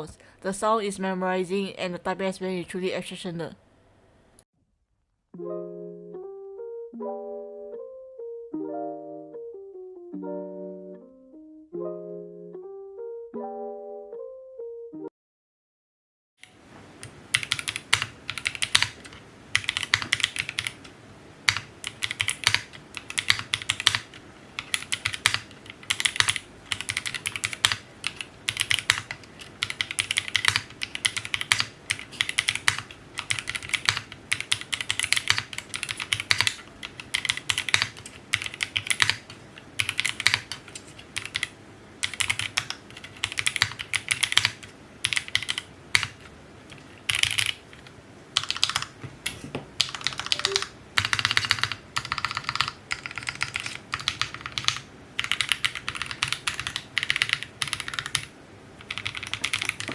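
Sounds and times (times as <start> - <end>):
mechanical keyboard typing: 16.4 - 46.3, 47.0 - 48.9, 49.8 - 59.9.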